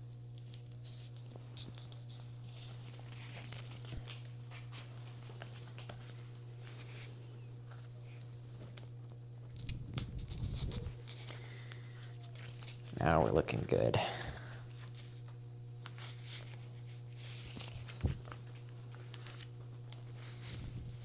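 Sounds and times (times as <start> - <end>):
low electrical hum: 0.0 - 21.0
bar tape rustling and creaking: 0.4 - 13.0.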